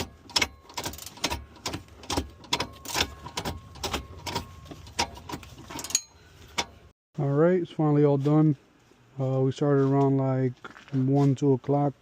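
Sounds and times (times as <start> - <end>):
metallic clicks and clanks of tools: 0.0 - 6.9.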